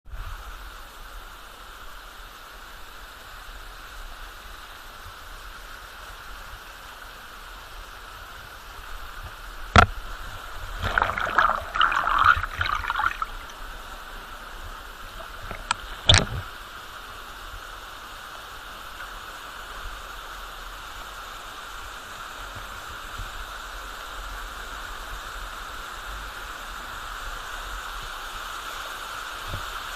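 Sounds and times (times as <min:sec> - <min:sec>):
waterfall rushing: 0:10.6 - 0:17.3.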